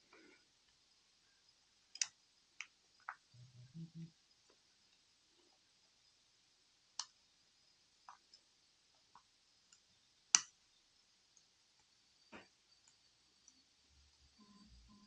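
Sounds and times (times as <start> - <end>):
small sharp clicks and taps: 1.9 - 3.3, 7.0 - 7.2, 8.0 - 10.6.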